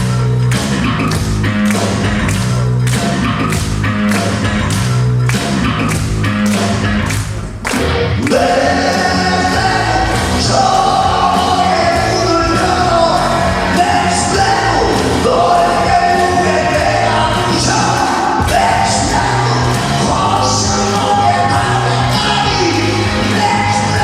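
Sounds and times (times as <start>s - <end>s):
rock band playing: 0.0s - 24.0s
steady drum beat: 0.0s - 24.0s
person singing: 8.2s - 24.0s.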